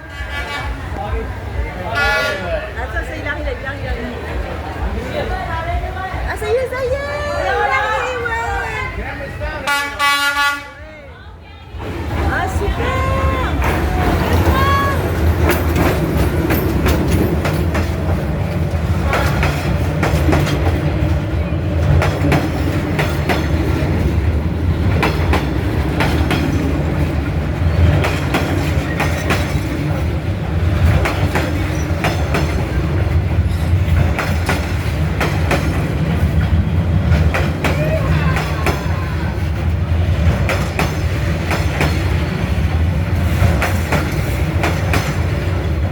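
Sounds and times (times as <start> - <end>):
train rumbling past: 0.0 - 45.9
wheels clacking on rails: 11.7 - 45.9.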